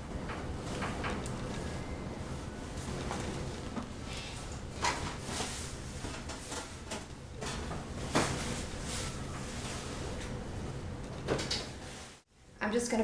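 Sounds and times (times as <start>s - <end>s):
steady low hum: 0.0s - 12.7s.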